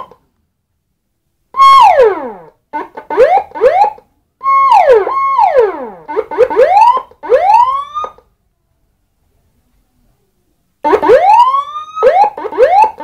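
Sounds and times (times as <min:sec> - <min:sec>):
electronic siren through horn speaker: 0:01.5 - 0:08.2, 0:10.8 - 0:13.0.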